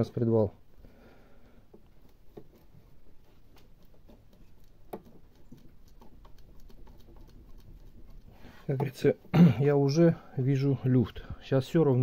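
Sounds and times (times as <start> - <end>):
faint metal clicks and knocks: 1.5 - 9.4.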